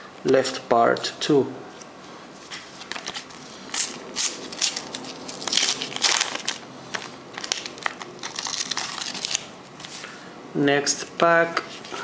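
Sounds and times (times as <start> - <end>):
stickers being shuffled: 2.5 - 10.0
wrappers crinkling: 2.8 - 9.5.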